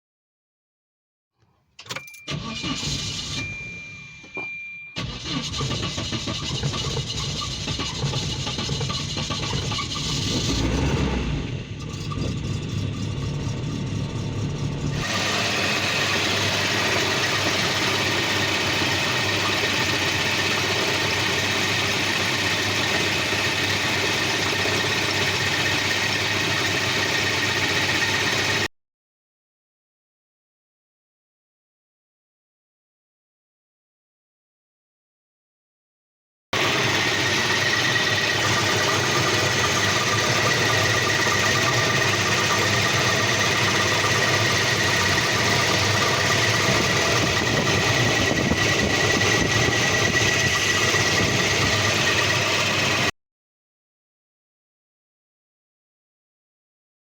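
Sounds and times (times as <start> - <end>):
car engine cranking and starting: 1.8 - 28.7, 36.6 - 53.1
steady high tone: 1.9 - 5.1.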